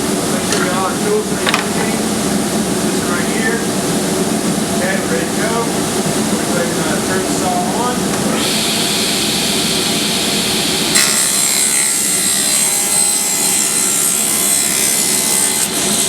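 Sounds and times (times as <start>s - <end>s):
table saw running: 0.0s - 16.0s
saw blade cutting wood: 8.4s - 16.0s.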